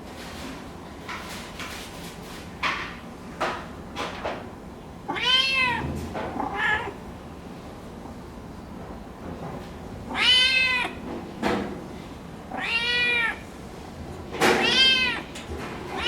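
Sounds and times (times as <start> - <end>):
cat meowing: 5.1 - 7.0, 10.1 - 11.0, 12.5 - 13.5, 14.5 - 16.0.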